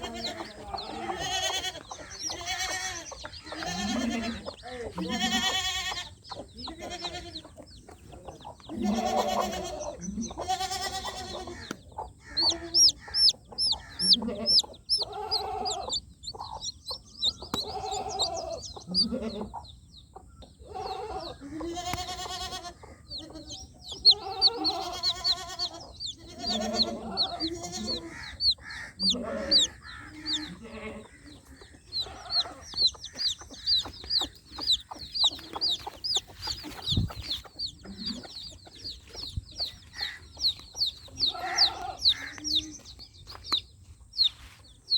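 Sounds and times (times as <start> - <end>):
baby chicks peeping: 0.0 - 44.9
hen clucking: 0.0 - 44.9.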